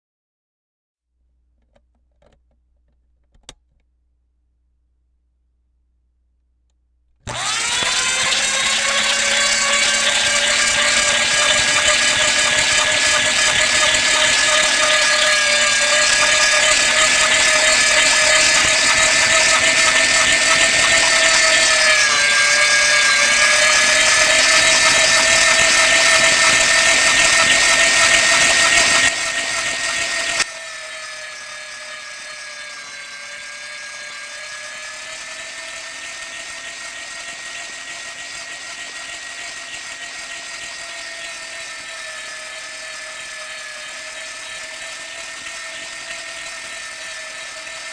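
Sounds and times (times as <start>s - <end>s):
meat grinder motor whine: 7.2s - 47.9s
rough grinding noise: 7.3s - 47.9s.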